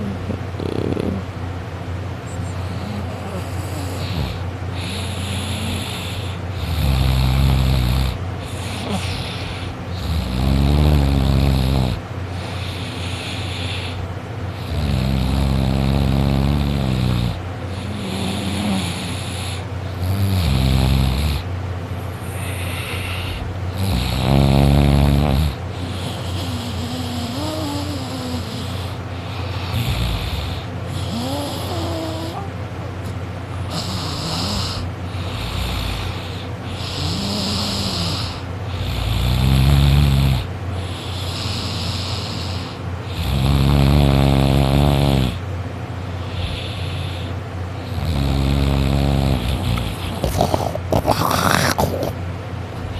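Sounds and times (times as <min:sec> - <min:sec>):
boy snoring loudly: 0:00.0 - 0:01.3, 0:02.6 - 0:14.0, 0:14.6 - 0:21.4, 0:22.2 - 0:32.5, 0:33.6 - 0:45.4, 0:46.3 - 0:52.2
quiet breathing: 0:02.3 - 0:06.6, 0:07.6 - 0:10.0, 0:11.9 - 0:14.8, 0:22.0 - 0:23.7, 0:25.5 - 0:32.6, 0:40.4 - 0:43.2, 0:46.0 - 0:48.0.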